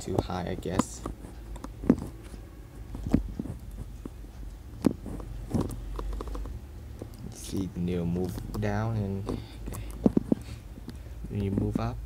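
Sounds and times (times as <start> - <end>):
low steady hum: 0.0 - 12.0
camera controls clicking: 5.2 - 7.2.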